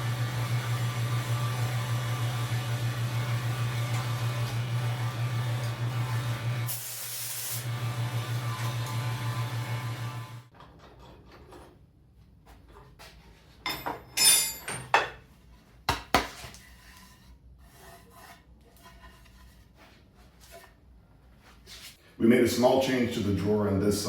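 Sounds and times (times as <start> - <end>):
wooden scrape: 15.4 - 22.0.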